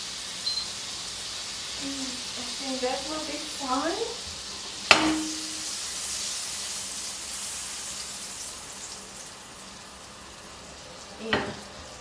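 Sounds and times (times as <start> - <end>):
butter sizzling in a frying pan: 0.0 - 12.0
short metallic ring: 4.9 - 5.7.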